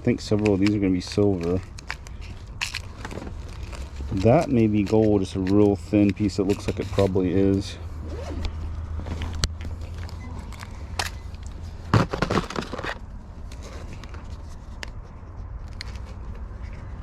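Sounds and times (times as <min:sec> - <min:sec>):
rustling crackling clatter: 0:00.0 - 0:17.0
light clicks of small items: 0:00.1 - 0:07.7.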